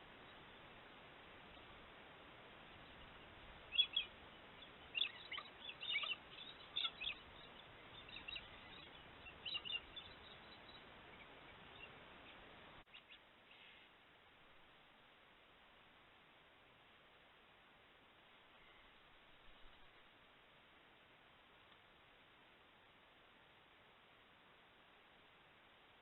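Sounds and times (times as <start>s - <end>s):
background hiss: 0.0s - 26.0s
birds chirping: 2.7s - 13.6s.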